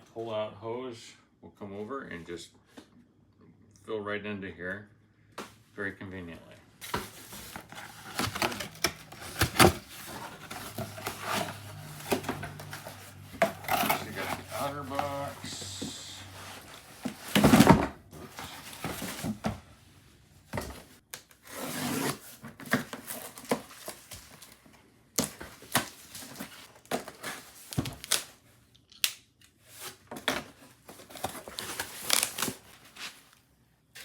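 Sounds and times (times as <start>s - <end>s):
cardboard packaging tearing and crinkling: 6.8s - 19.5s, 20.7s - 24.6s, 25.2s - 28.4s, 29.7s - 33.4s.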